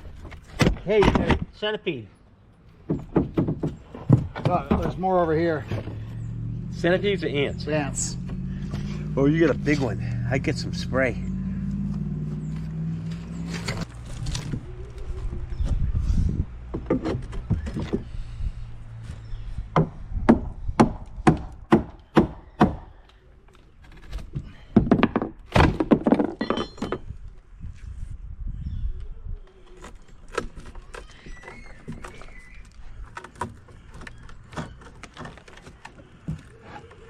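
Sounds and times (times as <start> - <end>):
sharp knocks on wood: 2.9 - 5.0.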